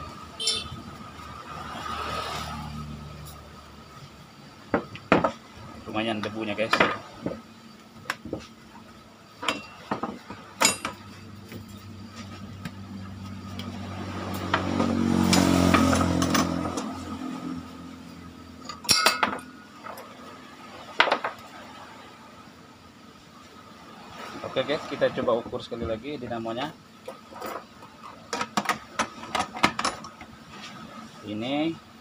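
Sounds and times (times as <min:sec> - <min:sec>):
tools clinking on workbench: 0:09.4 - 0:11.1, 0:18.6 - 0:20.1.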